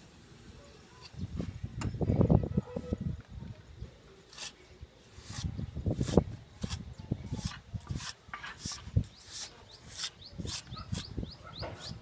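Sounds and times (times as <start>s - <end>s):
trowel scraping wet cement: 4.2s - 12.0s.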